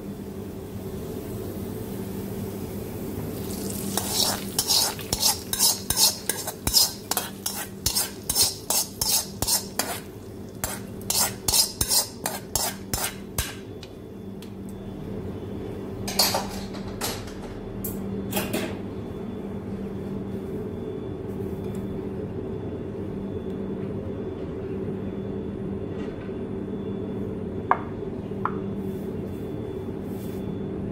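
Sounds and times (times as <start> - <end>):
steady low hum: 0.0 - 30.9
metal spoon clinking on pans: 3.9 - 13.6.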